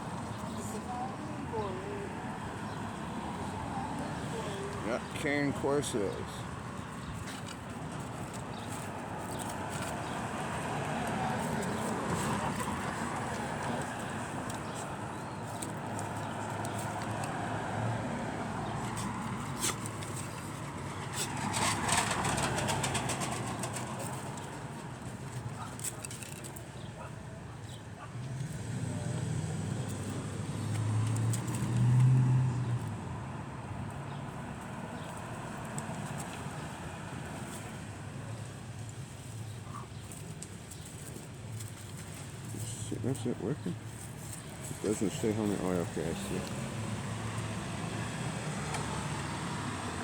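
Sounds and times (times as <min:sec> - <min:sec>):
puppies scuffling: 0:04.4 - 0:27.8, 0:34.6 - 0:49.0.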